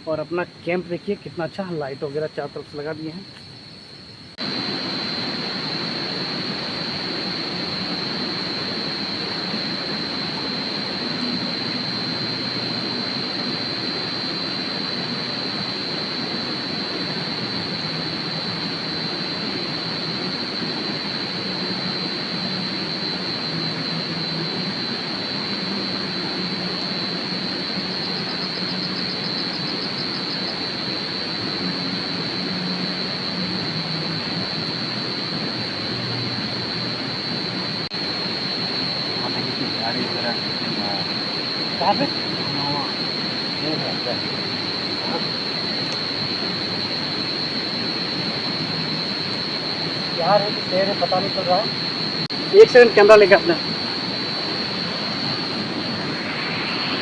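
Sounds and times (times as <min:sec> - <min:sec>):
high-pitched insect trill: 0:00.0 - 0:57.0
loud rushing noise: 0:53.2 - 0:57.0.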